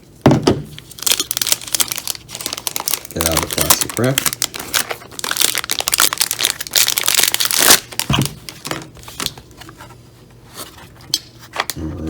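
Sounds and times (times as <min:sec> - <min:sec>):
plastic shrink wrap crinkling: 0:00.8 - 0:09.7.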